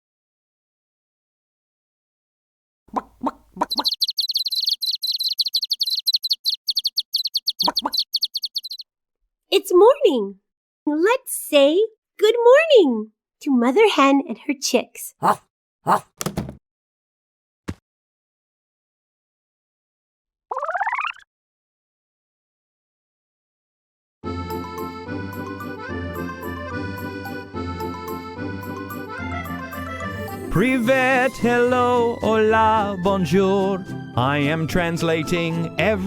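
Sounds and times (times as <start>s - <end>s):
hen clucking: 2.9s - 8.8s
chicks peeping: 3.0s - 8.8s.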